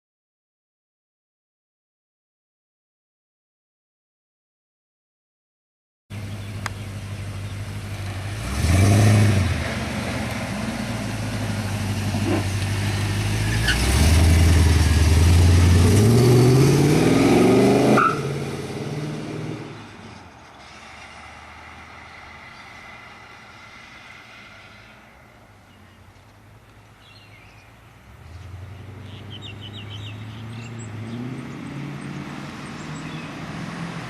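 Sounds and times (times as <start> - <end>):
car engine revving: 6.1 - 20.2, 28.1 - 34.0.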